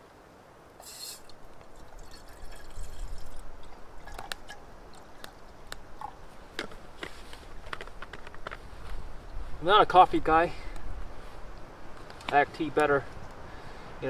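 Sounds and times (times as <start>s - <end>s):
water pouring and dripping: 0.8s - 6.3s.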